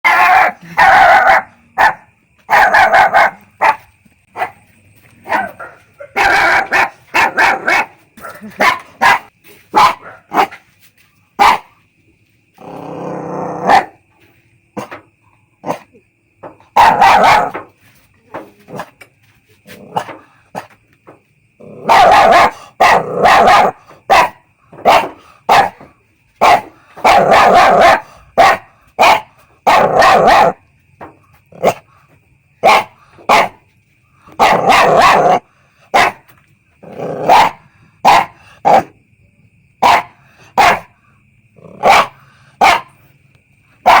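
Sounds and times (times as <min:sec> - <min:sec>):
puppy barking: 0:00.0 - 0:04.6, 0:05.3 - 0:10.6, 0:11.4 - 0:11.7, 0:13.6 - 0:14.0, 0:16.8 - 0:17.7, 0:21.8 - 0:30.6, 0:32.6 - 0:33.6, 0:34.4 - 0:36.3, 0:37.2 - 0:38.9, 0:39.8 - 0:40.9, 0:41.8 - 0:43.0.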